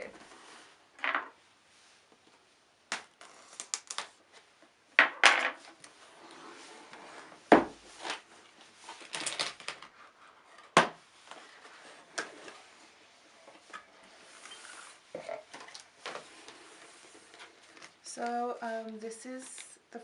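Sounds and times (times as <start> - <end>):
packaging rustling and scraping: 6.0 - 13.0.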